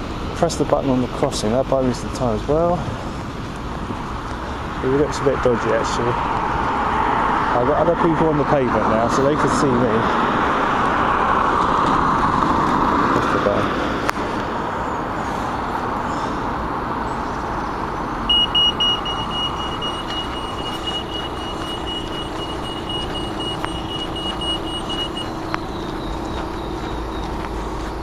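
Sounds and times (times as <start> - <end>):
road traffic passing: 0.0 - 28.0
crossing signal beeping: 18.2 - 28.0.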